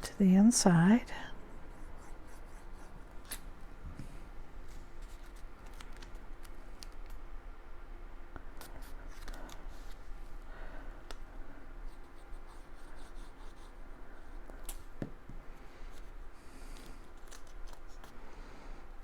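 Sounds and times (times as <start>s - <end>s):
paper rustling: 4.6s - 7.1s, 8.7s - 10.1s.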